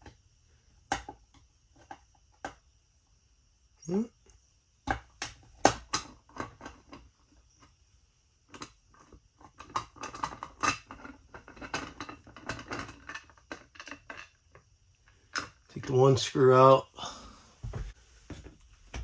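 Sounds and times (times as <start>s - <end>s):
plastic and metal clicks and rattles: 8.5s - 14.4s.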